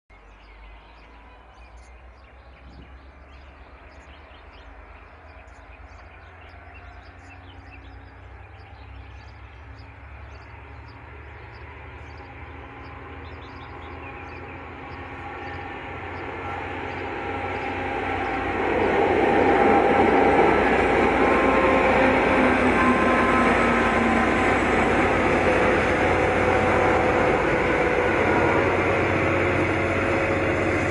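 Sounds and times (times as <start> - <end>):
birds chirping: 0.1 - 30.9
diesel locomotive engine hum: 0.1 - 30.9.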